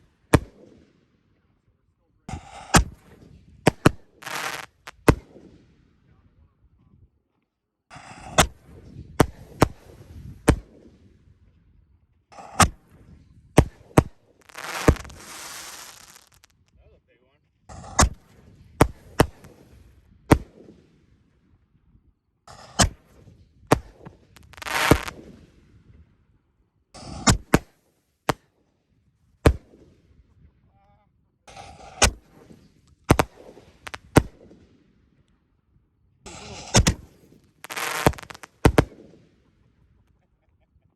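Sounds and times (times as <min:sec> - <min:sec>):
fireworks hissing and crackling: 0:02.3 - 0:05.2, 0:13.6 - 0:16.6, 0:17.7 - 0:19.8, 0:22.5 - 0:23.1, 0:23.7 - 0:25.4, 0:27.0 - 0:27.7, 0:31.5 - 0:32.5, 0:33.1 - 0:34.4, 0:36.3 - 0:39.0
fireworks banging: 0:02.3 - 0:05.3, 0:13.6 - 0:16.5, 0:17.7 - 0:20.5, 0:22.5 - 0:25.4, 0:27.0 - 0:27.7, 0:31.5 - 0:34.5, 0:36.3 - 0:39.1.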